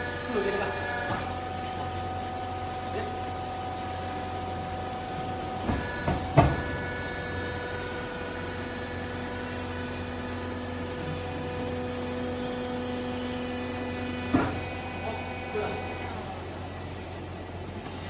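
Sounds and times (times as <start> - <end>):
hydraulic pump motor humming: 0.0 - 18.0.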